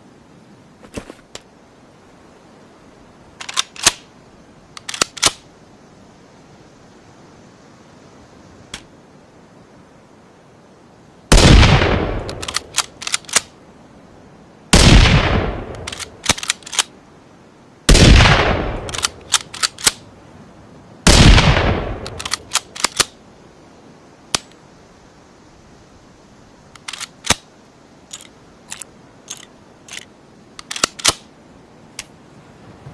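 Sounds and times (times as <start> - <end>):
rifle bolt metallic clicks: 3.4 - 4.0, 4.8 - 5.4, 12.2 - 13.5, 15.7 - 16.9, 18.7 - 20.0, 22.0 - 23.2, 26.7 - 27.4, 28.1 - 31.3
rifle shots: 11.3 - 13.5, 14.8 - 16.8, 17.9 - 20.0, 21.1 - 23.1.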